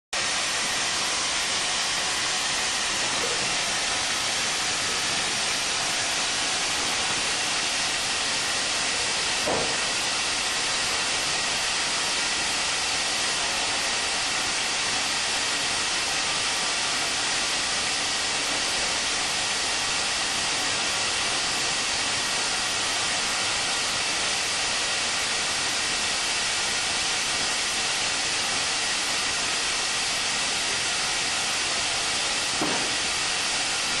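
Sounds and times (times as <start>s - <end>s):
sawmill hiss: 0.2s - 34.0s
faint short knock: 32.6s - 33.0s.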